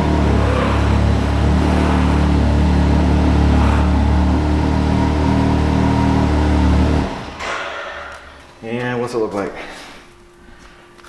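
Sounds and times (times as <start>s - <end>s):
turbo engine idling: 0.0s - 7.4s.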